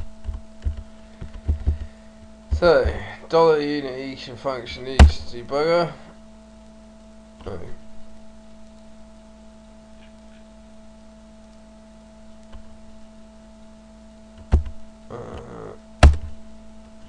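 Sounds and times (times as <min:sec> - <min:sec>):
steady electrical hum: 0:00.0 - 0:17.0
person humming murmur: 0:07.4 - 0:07.8, 0:15.0 - 0:15.9
loud sharp clicks with thump: 0:16.0 - 0:16.4.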